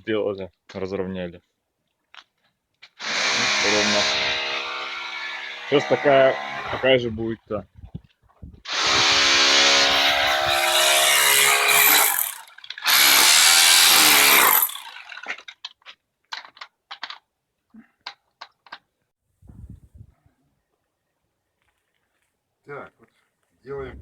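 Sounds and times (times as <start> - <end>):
electric power tool running: 3.0 - 6.8, 8.7 - 15.2.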